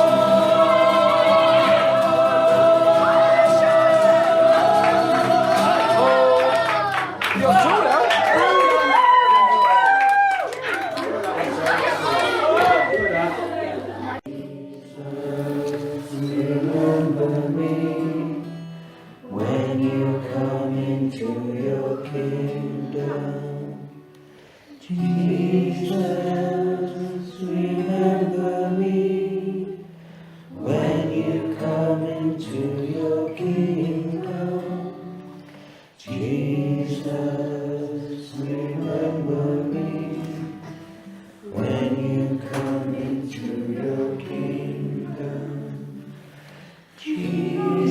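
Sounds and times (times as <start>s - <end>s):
group of voices singing: 0.0s - 7.1s, 11.5s - 47.9s.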